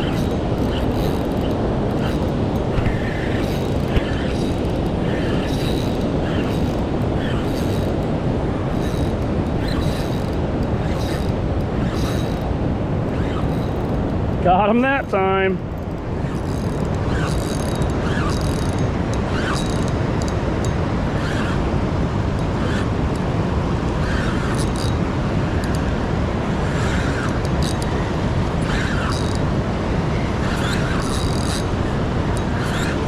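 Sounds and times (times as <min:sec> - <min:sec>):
fishing reel ticking: 0:00.0 - 0:08.1, 0:08.7 - 0:12.5, 0:13.1 - 0:14.2, 0:15.8 - 0:21.7, 0:22.4 - 0:22.9, 0:24.0 - 0:25.8, 0:26.6 - 0:28.0, 0:28.6 - 0:29.5, 0:30.4 - 0:33.0
river water rushing: 0:00.0 - 0:33.0
wind: 0:00.0 - 0:33.0.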